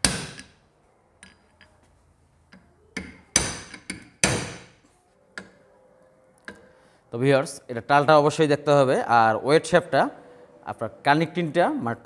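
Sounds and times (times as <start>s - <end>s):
hammer striking engine parts: 0.0s - 0.6s, 2.5s - 4.8s.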